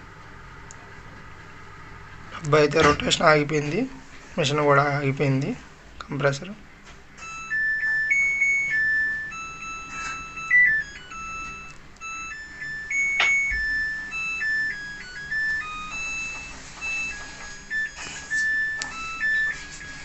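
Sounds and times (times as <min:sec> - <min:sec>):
washing machine beeping melody: 0:07.1 - 0:20.0.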